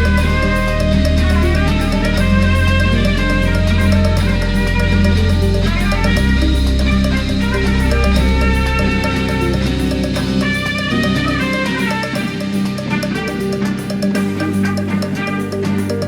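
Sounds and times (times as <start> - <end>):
electronic music with deep bassline: 0.0 - 16.0.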